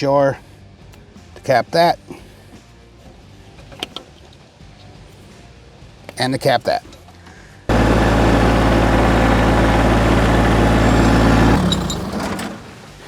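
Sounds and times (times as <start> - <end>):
tractor diesel engine running: 7.7 - 13.0.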